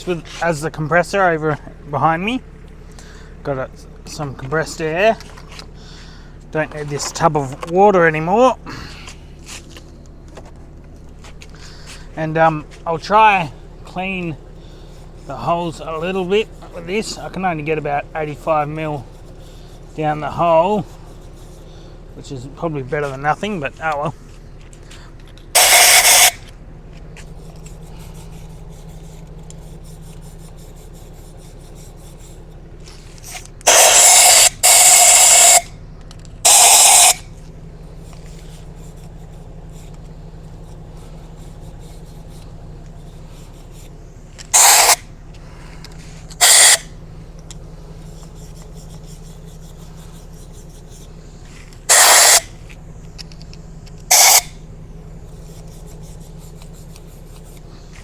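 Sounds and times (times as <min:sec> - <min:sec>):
steady low hum: 0:00.0 - 0:58.0
compressed air hissing blasts: 0:25.5 - 0:26.4, 0:36.4 - 0:52.6, 0:54.1 - 0:57.0.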